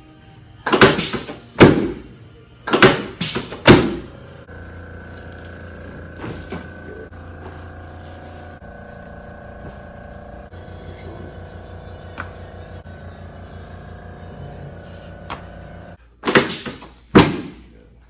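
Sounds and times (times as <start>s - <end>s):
steady hum: 3.0s - 16.0s.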